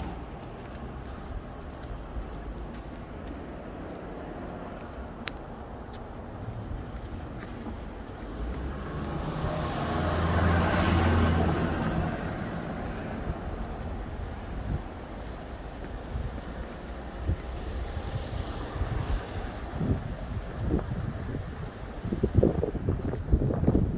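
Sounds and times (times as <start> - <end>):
outdoor background noise: 0.0 - 23.9
vehicle passing by: 7.8 - 14.8.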